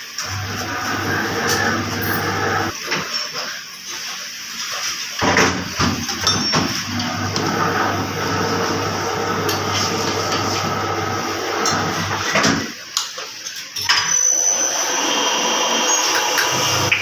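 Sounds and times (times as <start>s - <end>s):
low mechanical hum: 0.0s - 2.8s, 5.2s - 12.7s.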